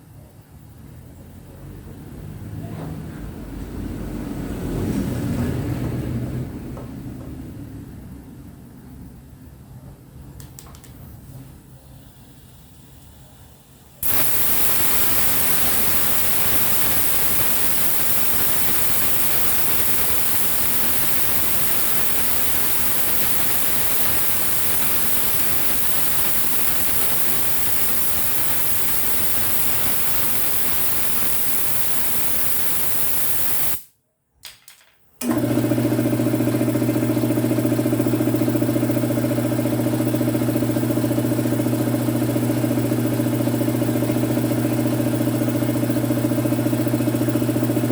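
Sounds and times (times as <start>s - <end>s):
loud steady hiss: 11.2s - 34.0s
air compressor motor humming: 14.0s - 33.8s, 35.2s - 47.9s.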